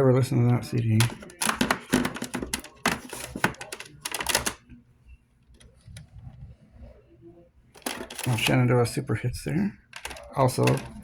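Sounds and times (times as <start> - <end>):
plastic cases clacking: 0.5 - 4.6, 7.8 - 8.6, 9.9 - 11.0.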